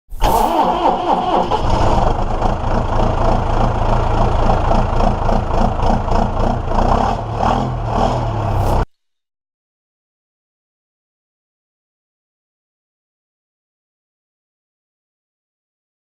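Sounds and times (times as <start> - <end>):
tractor engine running: 0.2 - 8.9.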